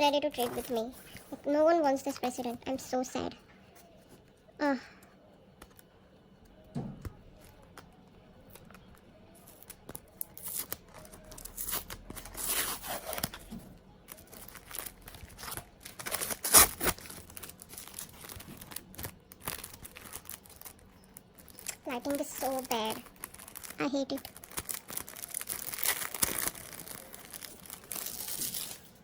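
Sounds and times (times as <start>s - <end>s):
packaging tearing and rustling: 9.4s - 29.0s.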